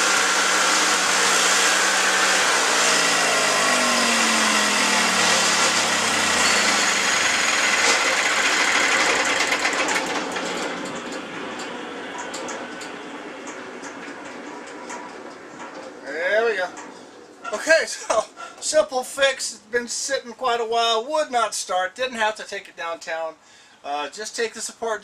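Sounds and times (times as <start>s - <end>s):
engine running steadily: 0.0s - 16.0s.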